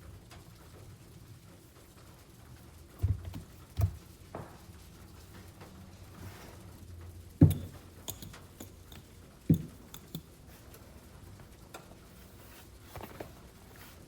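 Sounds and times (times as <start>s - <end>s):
light clicks and taps: 7.4s - 10.3s.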